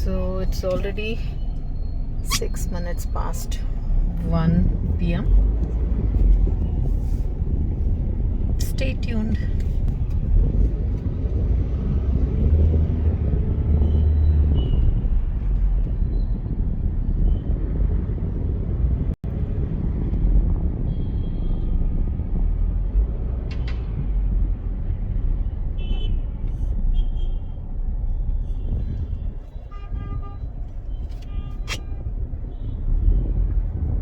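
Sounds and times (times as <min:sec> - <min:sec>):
car engine and road rumble: 0:00.0 - 0:34.0
car horns honking: 0:29.7 - 0:32.8.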